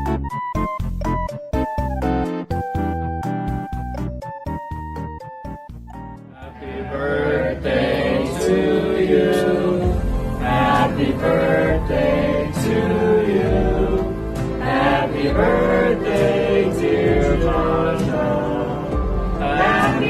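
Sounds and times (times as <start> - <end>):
song with choir-like singing: 6.3 - 20.0.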